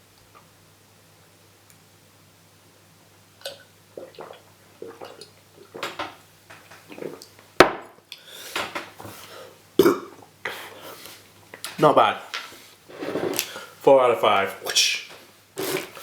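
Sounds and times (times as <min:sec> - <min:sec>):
cup clinking and scraping: 0:12.9 - 0:13.5.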